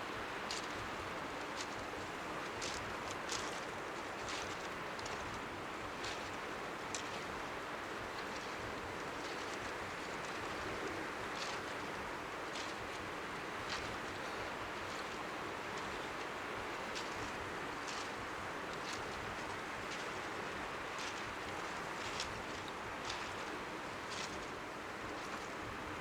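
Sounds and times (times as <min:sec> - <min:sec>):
waves lapping on shore: 0:00.1 - 0:26.0
faint crisp ticks: 0:00.5 - 0:00.8, 0:01.4 - 0:05.4, 0:06.0 - 0:07.5, 0:16.9 - 0:20.2.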